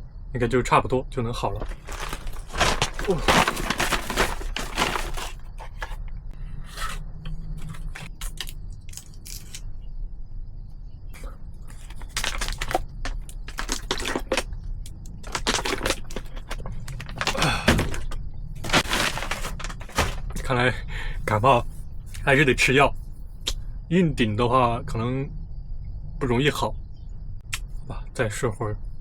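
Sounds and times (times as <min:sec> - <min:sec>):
plastic and foil packaging crackling: 0:01.6 - 0:06.0, 0:07.6 - 0:09.6, 0:11.7 - 0:14.5, 0:15.1 - 0:20.5.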